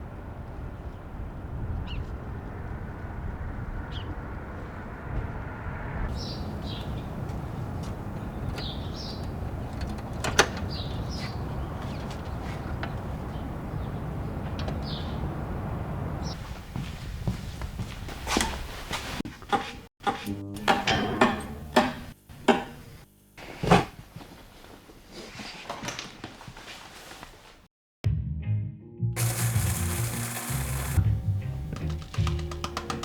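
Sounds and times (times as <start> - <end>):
low rumble: 0.0 - 8.5.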